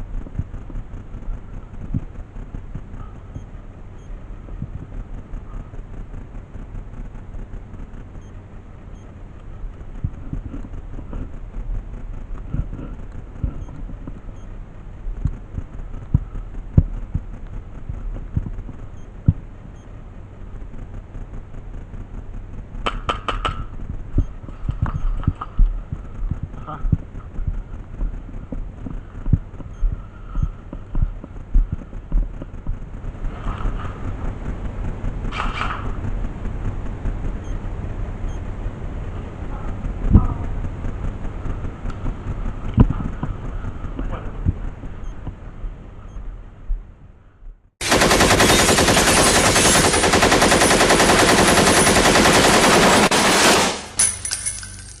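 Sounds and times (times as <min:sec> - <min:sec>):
low rumble: 0:00.0 - 0:22.9, 0:23.5 - 0:52.7
dull low footstep thumps: 0:25.6 - 0:32.8
rapid automatic gunfire: 0:47.8 - 0:54.2.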